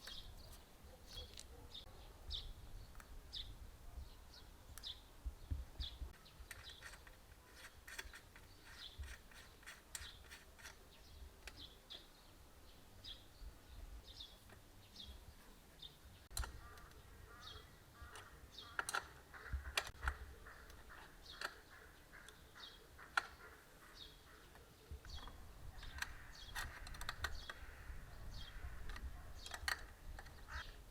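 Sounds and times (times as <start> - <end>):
small bird chirping: 0.0 - 30.9
sharp clicks and clatters: 6.4 - 11.6
low wind rumble: 24.9 - 30.9.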